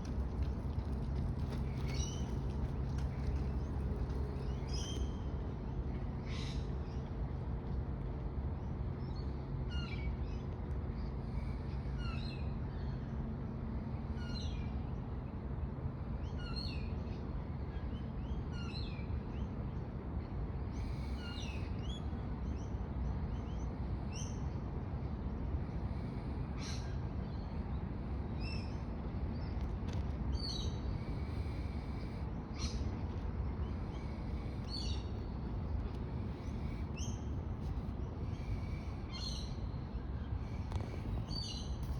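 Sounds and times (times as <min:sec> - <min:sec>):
steady low rumble: 0:00.0 - 0:09.5, 0:19.8 - 0:41.9.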